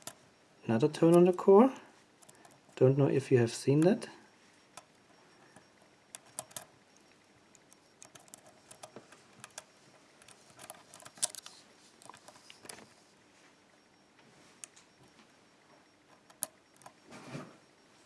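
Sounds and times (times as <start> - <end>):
lock pick clicking and scraping: 2.2 - 2.7, 4.8 - 6.7, 7.5 - 12.8, 16.2 - 17.0.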